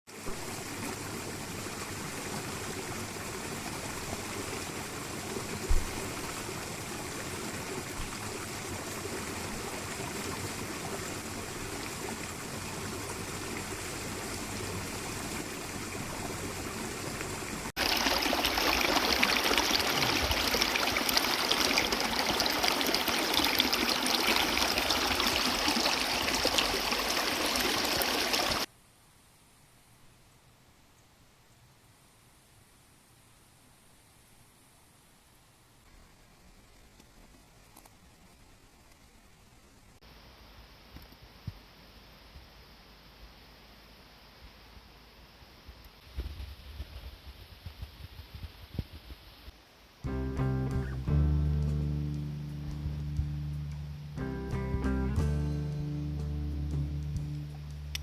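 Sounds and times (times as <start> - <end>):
close rushing water: 0.1 - 28.7
running water: 0.1 - 28.7
low thump: 5.7 - 6.0.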